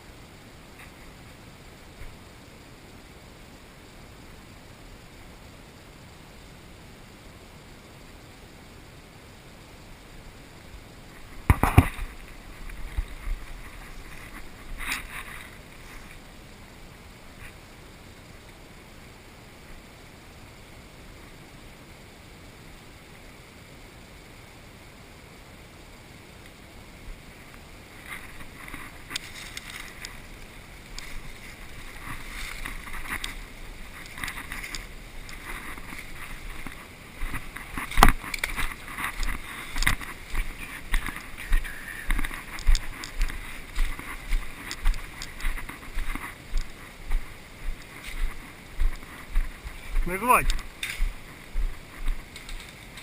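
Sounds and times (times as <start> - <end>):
footsteps: 28.0 - 53.0
rustling handling noise: 28.0 - 53.0.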